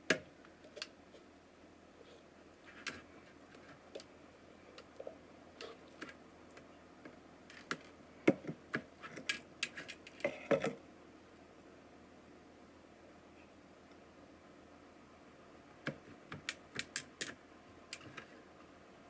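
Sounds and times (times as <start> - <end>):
hands handling things clicking: 7.5 - 10.3, 15.9 - 18.3.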